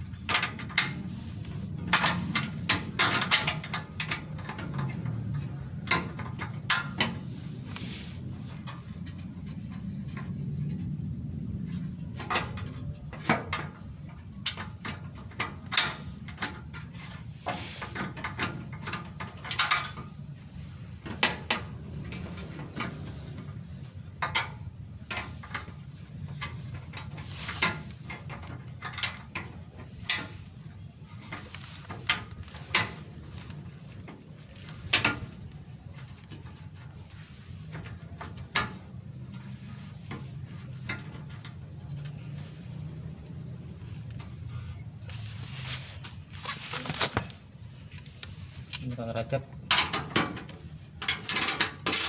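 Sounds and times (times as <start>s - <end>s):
hand tools clinking on bolts: 12.1s - 20.3s.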